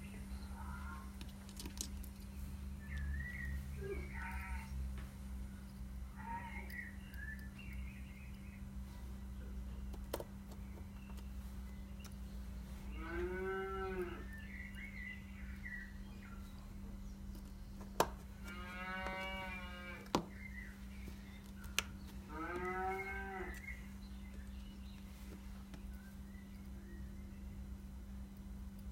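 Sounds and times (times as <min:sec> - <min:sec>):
low steady hum: 0:00.0 - 0:28.9
cattle mooing: 0:12.9 - 0:14.3, 0:18.5 - 0:20.1, 0:22.3 - 0:23.6.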